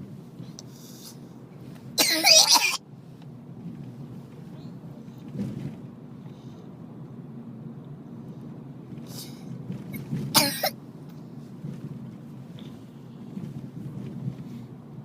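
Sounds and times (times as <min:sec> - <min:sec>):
soft breathy sound: 0:00.3 - 0:01.4
child coughing: 0:02.0 - 0:02.8, 0:10.4 - 0:10.8.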